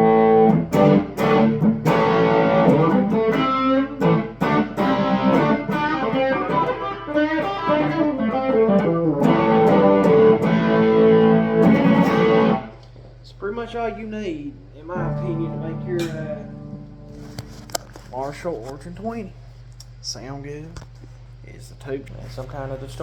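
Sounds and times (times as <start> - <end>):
overdriven electric guitar: 0.0 - 12.8, 15.0 - 18.0.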